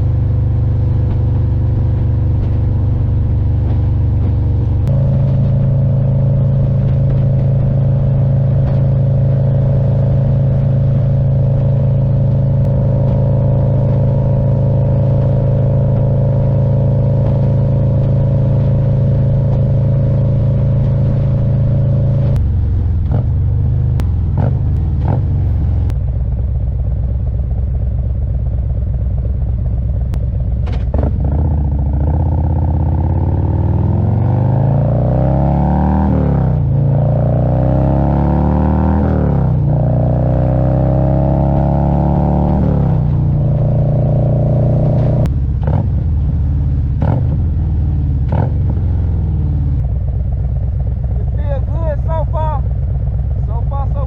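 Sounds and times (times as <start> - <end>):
motorcycle engine cruising: 0.0 - 54.0.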